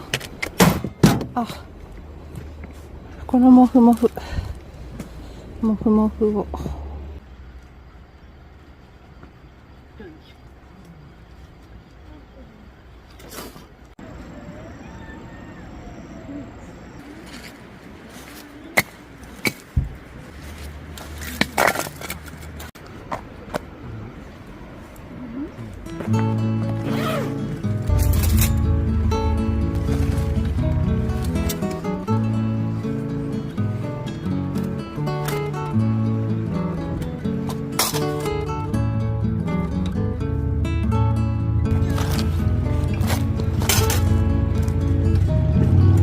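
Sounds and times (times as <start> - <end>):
low steady hum: 23.6 - 46.0
acoustic guitar melody: 25.6 - 46.0.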